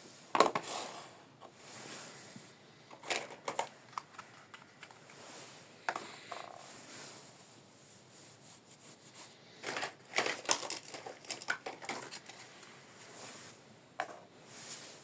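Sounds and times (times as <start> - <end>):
plastic toy pieces knocking: 2.9 - 5.0, 9.6 - 12.4
plastic toy pieces clicking: 9.6 - 12.5.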